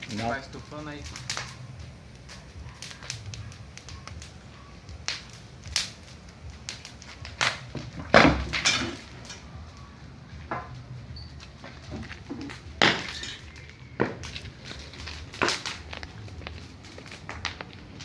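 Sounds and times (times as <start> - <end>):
bonfire crackling and popping: 0.0 - 18.0.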